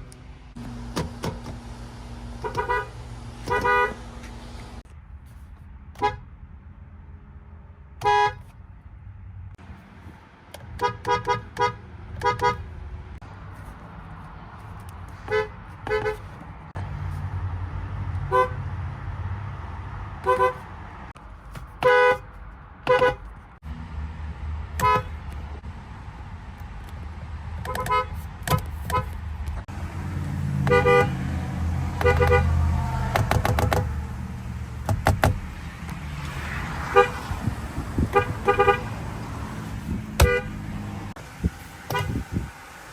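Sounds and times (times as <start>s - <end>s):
car horn short beeps: 2.4s - 4.1s, 38.1s - 38.8s, 40.2s - 40.5s, 41.9s - 42.2s.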